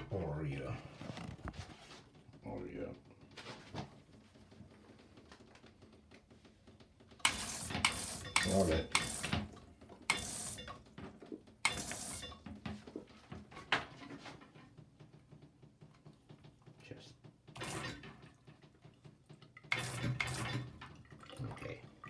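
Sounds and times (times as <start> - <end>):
bidet sprayer hissing spray: 7.2 - 9.4.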